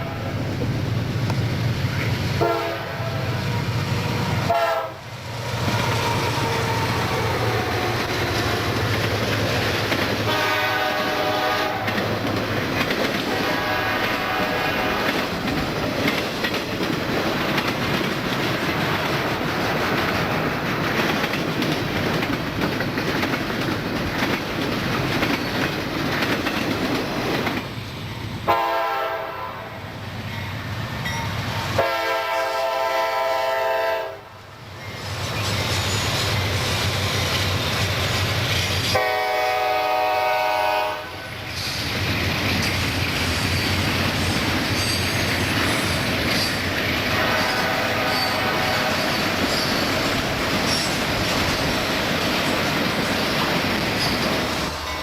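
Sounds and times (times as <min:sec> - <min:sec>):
locomotive horn: 0:00.0 - 0:00.4, 0:02.4 - 0:05.1, 0:05.8 - 0:08.0, 0:10.2 - 0:12.0, 0:13.3 - 0:15.3, 0:28.4 - 0:29.9, 0:31.8 - 0:34.4, 0:38.9 - 0:41.5, 0:47.1 - 0:49.8
train wheels clattering over rail joints: 0:07.3 - 0:28.3, 0:41.4 - 0:55.0.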